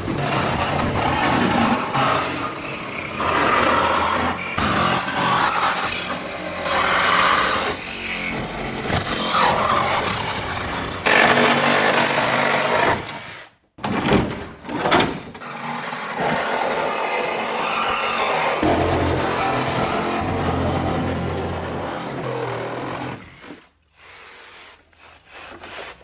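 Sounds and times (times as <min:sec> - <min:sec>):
reciprocating saw cutting: 0:15.4 - 0:26.0.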